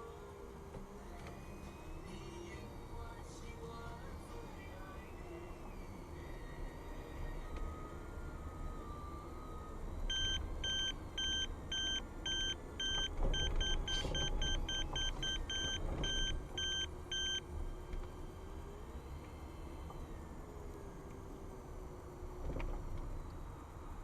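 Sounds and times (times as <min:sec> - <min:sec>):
car engine rumbling: 0:00.0 - 0:24.0
electronic beeper beeping: 0:09.5 - 0:17.5.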